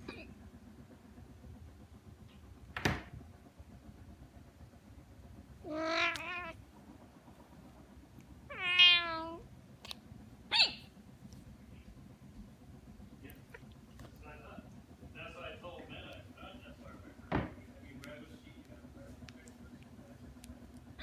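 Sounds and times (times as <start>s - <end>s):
cat meowing: 5.6s - 6.6s, 8.5s - 9.4s.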